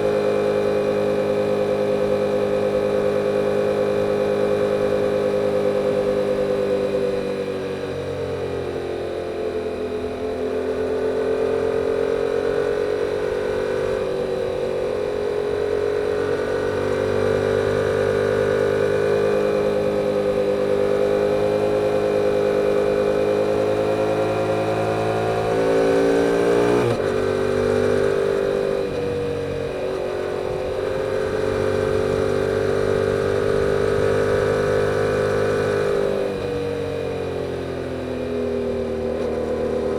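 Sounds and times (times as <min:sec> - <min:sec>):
motorcycle engine revving: 0:10.7 - 0:39.9.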